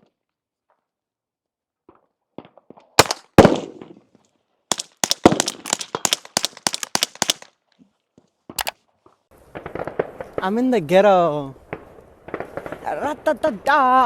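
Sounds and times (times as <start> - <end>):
gunshots: 3.0 - 4.0, 4.7 - 7.5, 9.4 - 10.8, 11.7 - 13.3.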